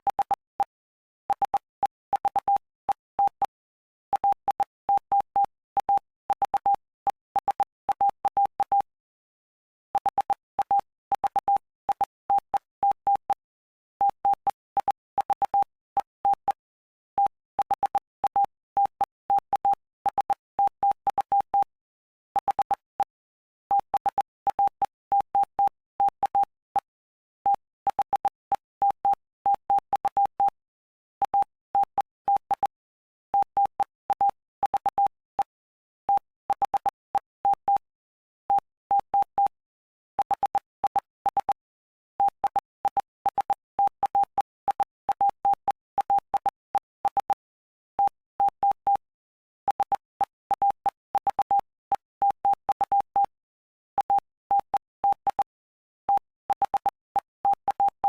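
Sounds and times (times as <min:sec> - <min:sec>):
morse code beeps: 0:10.0 - 0:13.4, 0:17.2 - 0:21.7, 0:22.4 - 0:26.9, 0:27.5 - 0:30.6, 0:31.2 - 0:32.8, 0:33.4 - 0:37.8, 0:38.5 - 0:39.6, 0:40.2 - 0:41.6, 0:42.2 - 0:49.0, 0:49.7 - 0:53.3, 0:54.0 - 0:58.0.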